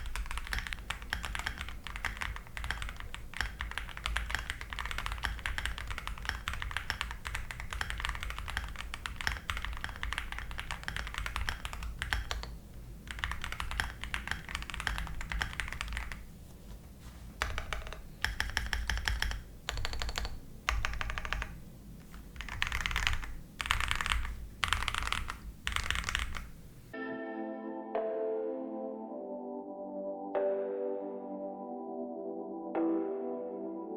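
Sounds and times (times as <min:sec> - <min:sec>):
typing on keyboard: 0:00.0 - 0:16.3, 0:17.4 - 0:26.6
soft ambient music: 0:26.9 - 0:33.9.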